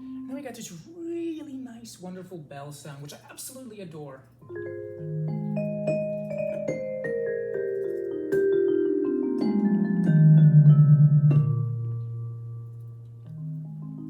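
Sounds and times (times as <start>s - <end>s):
digital piano bell tone notes: 4.5s - 14.0s.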